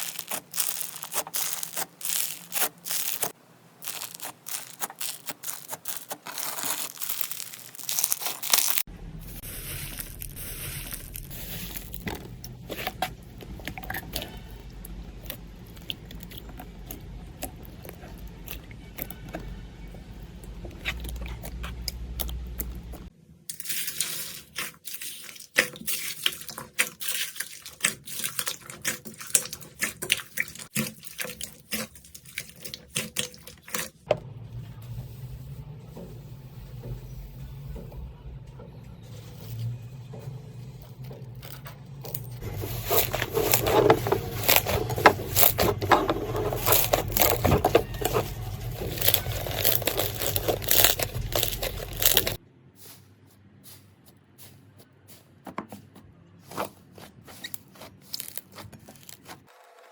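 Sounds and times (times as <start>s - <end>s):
slime crackling and popping: 0.0s - 22.9s, 41.3s - 52.4s, 57.3s - 59.4s
slime squishing: 0.0s - 59.5s.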